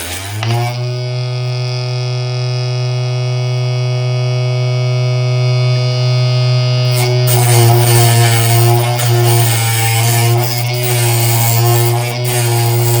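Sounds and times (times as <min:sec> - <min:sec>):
rough noisy sound: 0:00.0 - 0:01.5, 0:06.2 - 0:13.0
table saw whining: 0:00.0 - 0:13.0.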